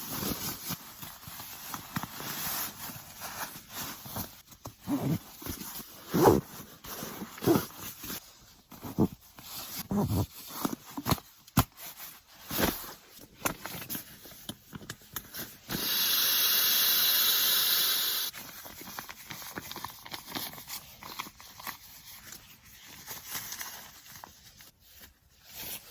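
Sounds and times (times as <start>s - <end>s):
camping gear rustling: 0.0s - 15.7s.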